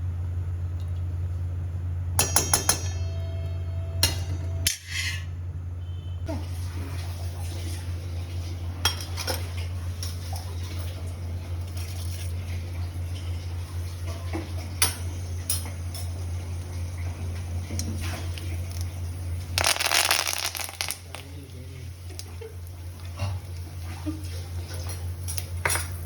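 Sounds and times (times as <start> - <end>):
steady low hum: 0.0 - 6.3.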